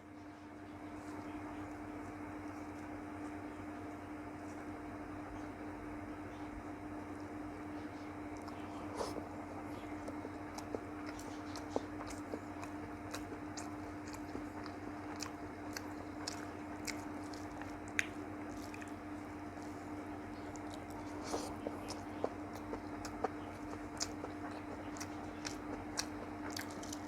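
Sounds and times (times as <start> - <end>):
steady low hum: 0.0 - 27.0
chewing and eating mouth sounds: 6.4 - 27.0.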